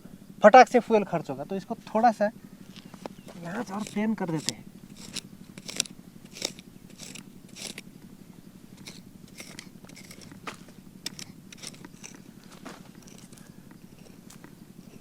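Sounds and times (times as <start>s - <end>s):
hand tool digging soil: 2.8s - 7.9s, 8.7s - 15.0s.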